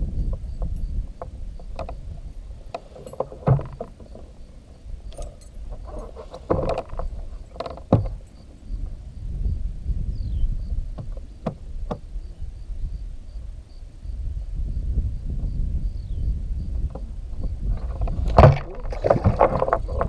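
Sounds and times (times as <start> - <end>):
knocks and clunks on a boat: 0.0 - 9.1, 10.3 - 12.4, 16.6 - 20.0
loud thumps: 17.8 - 20.0.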